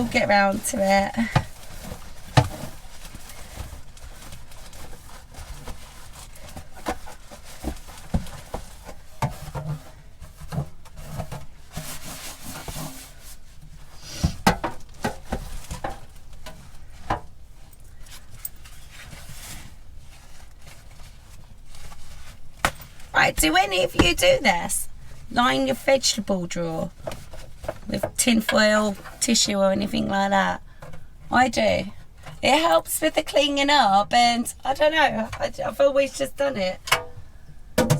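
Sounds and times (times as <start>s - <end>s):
fridge trays knocking and clicking: 36.9s - 37.9s.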